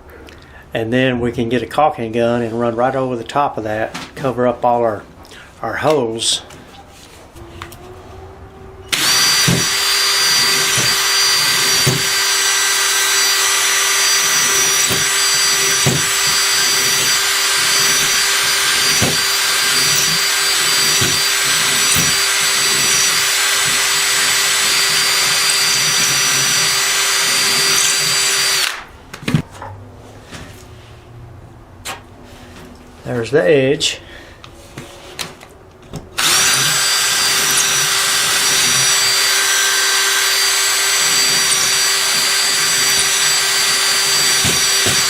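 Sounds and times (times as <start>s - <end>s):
electric drill boring: 8.9s - 28.9s, 36.2s - 45.0s.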